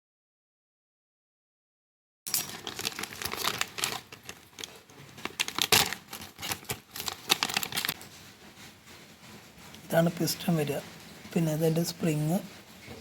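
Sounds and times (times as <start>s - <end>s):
plastic packaging crinkling: 2.3s - 10.4s.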